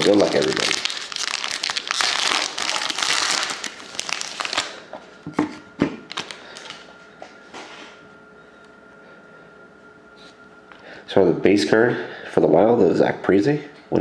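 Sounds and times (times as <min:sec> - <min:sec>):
plastic wrapping crinkling and tearing: 0:00.0 - 0:04.8, 0:06.1 - 0:06.8.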